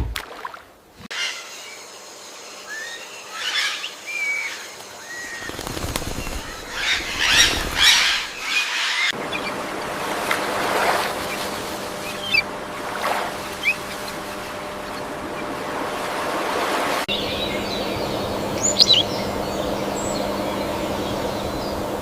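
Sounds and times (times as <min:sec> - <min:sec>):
bird chirping: 0:01.2 - 0:09.6, 0:12.0 - 0:12.6, 0:13.5 - 0:15.5, 0:17.1 - 0:21.9.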